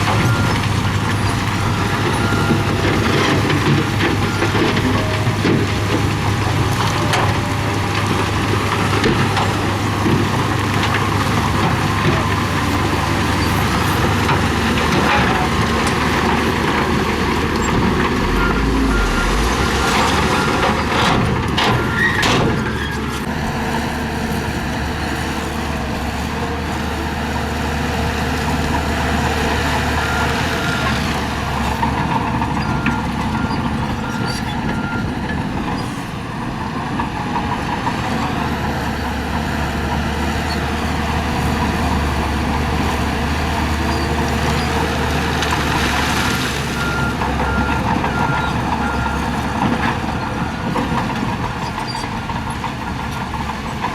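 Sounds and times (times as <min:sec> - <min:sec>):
heavy construction machinery running: 0:00.0 - 0:53.9
reversing alarm beeping: 0:16.9 - 0:22.0, 0:46.8 - 0:51.0.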